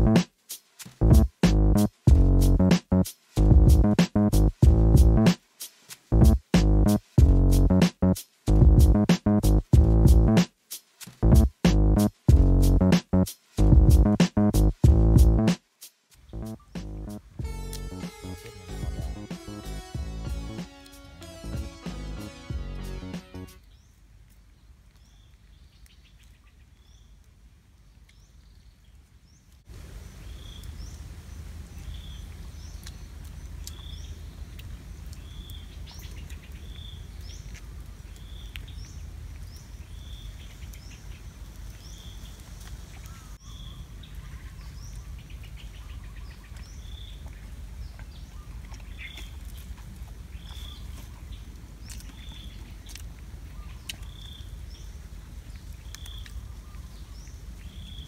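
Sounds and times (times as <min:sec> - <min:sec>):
low background rumble: 0:01.0 - 0:02.7, 0:03.4 - 0:05.3, 0:06.1 - 0:10.4, 0:11.2 - 0:15.5.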